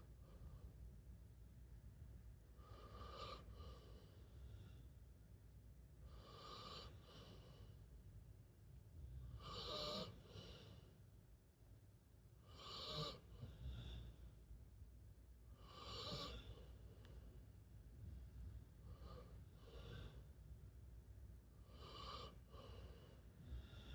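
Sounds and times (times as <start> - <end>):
pet snoring softly: 2.6 - 4.6, 6.1 - 7.6, 9.0 - 10.8, 12.4 - 14.3, 15.6 - 16.8, 21.6 - 23.9.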